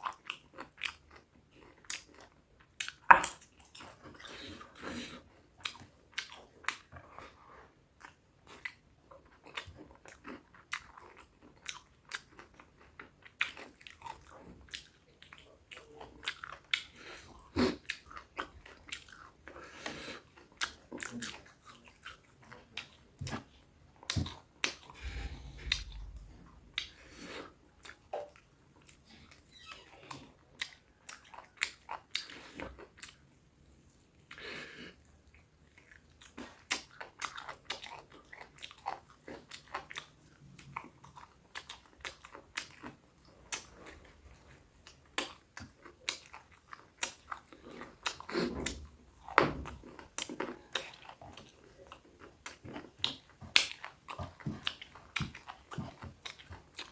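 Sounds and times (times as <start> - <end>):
person chewing food: 0.0 - 29.4, 30.1 - 56.9
food crunching: 24.0 - 29.0.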